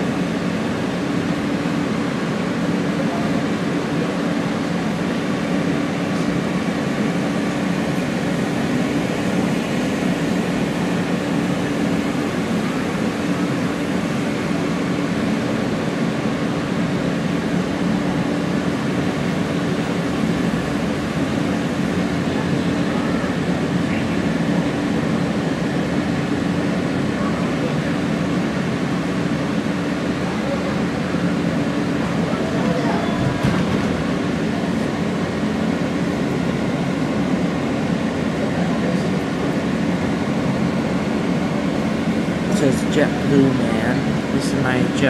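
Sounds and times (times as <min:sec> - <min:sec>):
subway car rumbling on track: 0:00.0 - 0:45.0.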